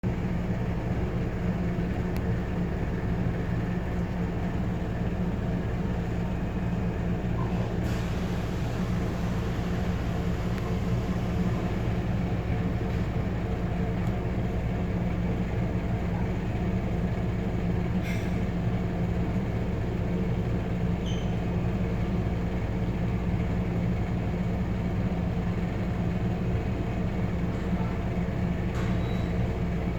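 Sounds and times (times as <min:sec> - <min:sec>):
exhaust fan droning hum: 0:00.0 - 0:29.9.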